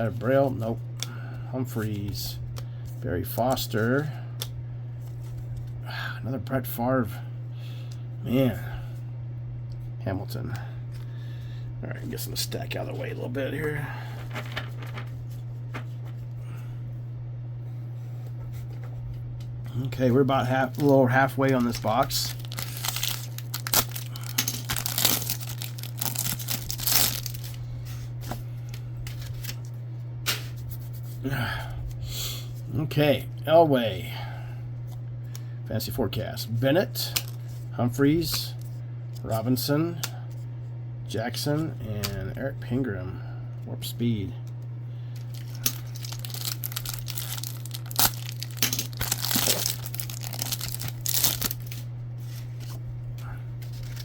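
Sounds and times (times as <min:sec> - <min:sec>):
low hum: 0:00.0 - 0:54.0
foil wrapper tearing and crinkling: 0:20.5 - 0:27.6, 0:45.2 - 0:51.8, 0:53.6 - 0:54.0.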